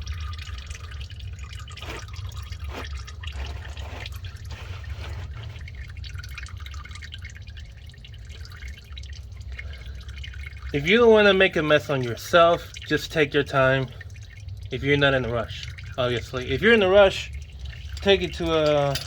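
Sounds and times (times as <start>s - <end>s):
oil dripping and trickling: 0.0s - 19.0s
steady low hum: 0.0s - 19.0s.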